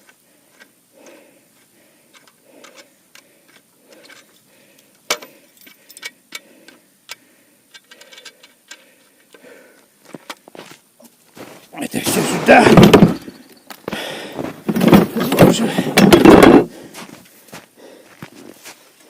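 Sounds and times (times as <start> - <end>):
soft breathing: 0.1 - 10.3, 13.2 - 14.7, 16.6 - 19.0.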